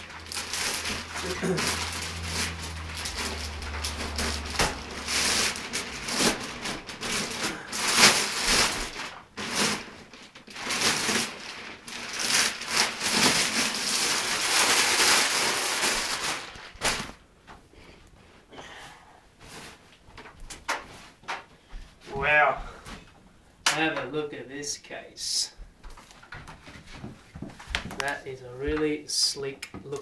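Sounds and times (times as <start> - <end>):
plastic wrapping crinkling: 0.0 - 17.2.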